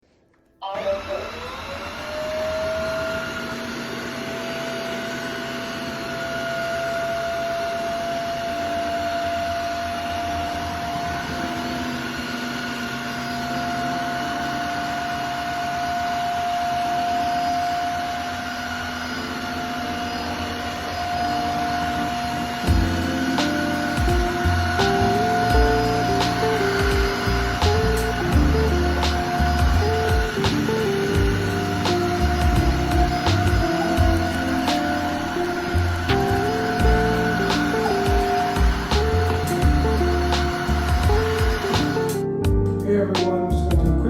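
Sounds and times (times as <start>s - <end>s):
vacuum motor whine: 0.3s - 42.6s
suction rushing: 14.7s - 42.2s.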